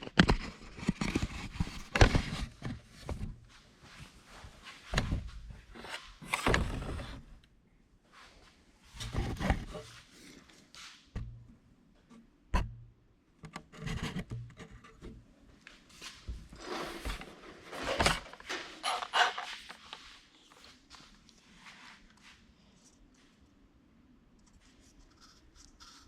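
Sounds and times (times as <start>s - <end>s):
metal scraping: 16.5s - 20.0s.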